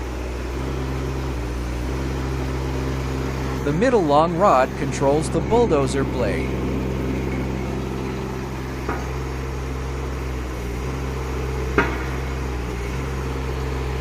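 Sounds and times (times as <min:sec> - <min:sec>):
excavator engine running: 0:00.0 - 0:14.0
sharp metallic knocks: 0:05.8 - 0:09.6, 0:11.7 - 0:12.4.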